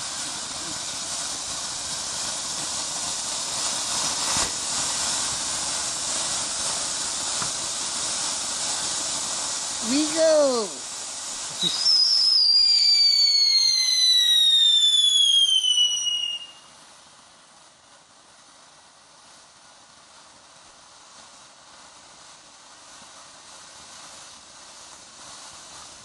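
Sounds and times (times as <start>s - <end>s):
firework falling whistle: 0.0s - 16.9s
faint background hiss: 0.0s - 26.0s.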